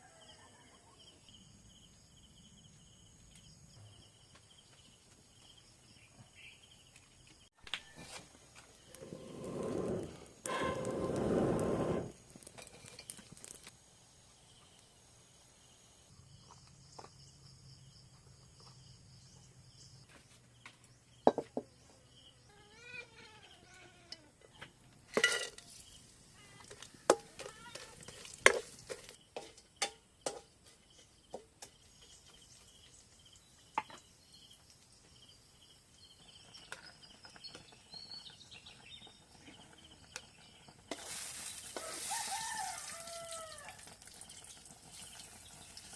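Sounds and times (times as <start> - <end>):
faint high insect or bird tones: 13.8 - 24.7, 30.9 - 45.8.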